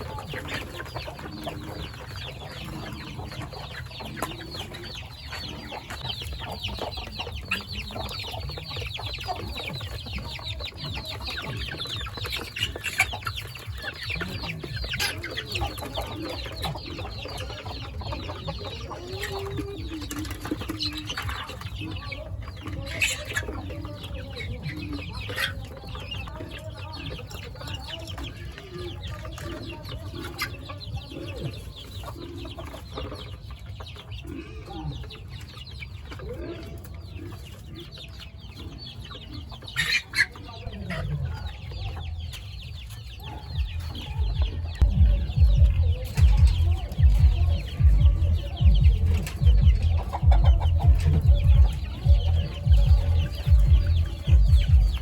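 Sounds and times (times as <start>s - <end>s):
chickens clucking: 0.0s - 55.0s
loud low rumble: 43.6s - 55.0s.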